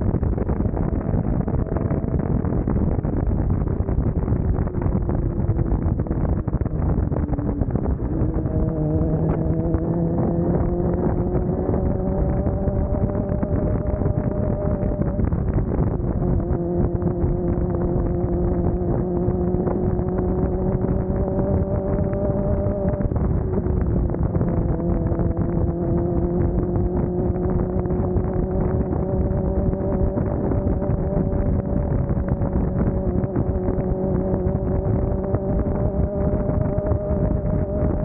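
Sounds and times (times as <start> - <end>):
wind noise on microphone: 0.0 - 38.0
motorcycle engine running: 4.7 - 15.2.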